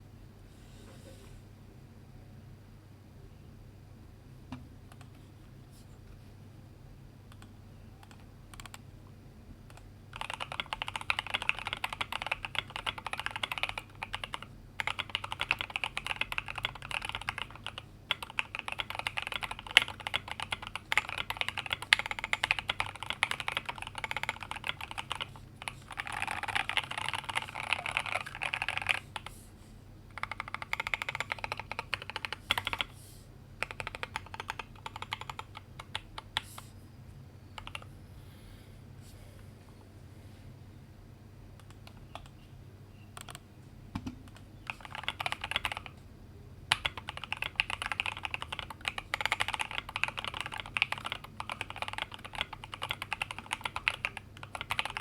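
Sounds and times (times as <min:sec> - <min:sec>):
fast typing on mechanical keyboard: 0:07.3 - 0:08.8, 0:09.7 - 0:29.3, 0:30.1 - 0:32.9, 0:33.6 - 0:36.5, 0:37.6 - 0:37.9, 0:44.3 - 0:46.0, 0:46.7 - 0:55.0.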